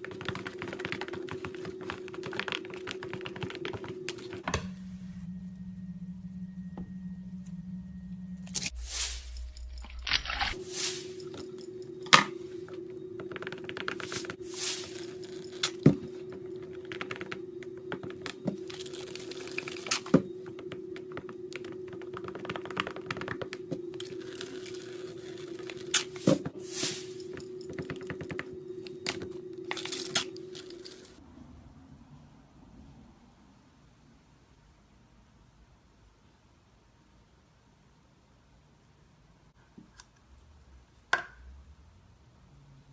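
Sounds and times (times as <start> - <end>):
steady low hum: 0.0 - 31.2.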